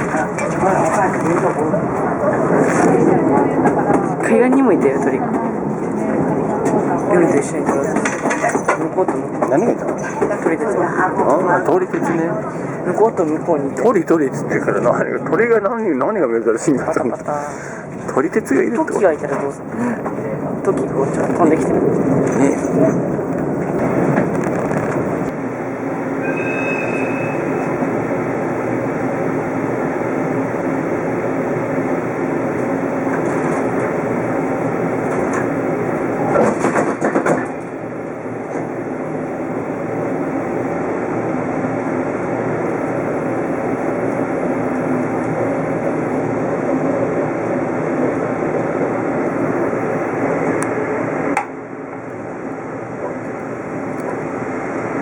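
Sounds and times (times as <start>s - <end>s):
train wheels rumbling on rails: 0.0s - 51.6s
high wheel squeal: 26.2s - 27.8s.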